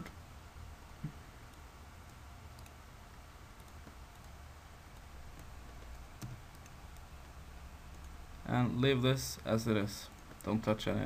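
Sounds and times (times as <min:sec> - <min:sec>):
low steady hum: 0:00.0 - 0:11.0
keyboard and mouse clicks: 0:01.0 - 0:08.2.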